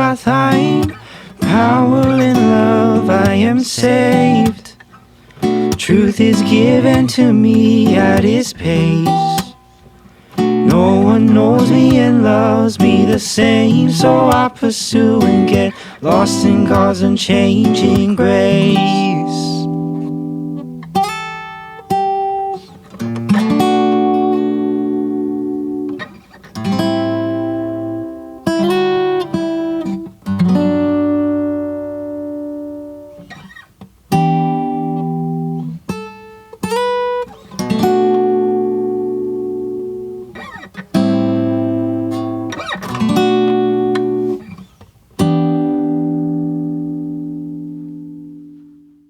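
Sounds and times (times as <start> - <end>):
guitar plucking chords: 0.0 - 49.0.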